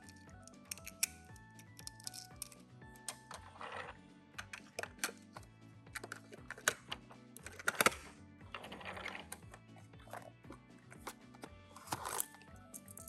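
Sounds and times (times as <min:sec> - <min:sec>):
toy cars clicking and tapping: 0:00.0 - 0:05.2, 0:11.8 - 0:13.0
background music: 0:00.0 - 0:13.0.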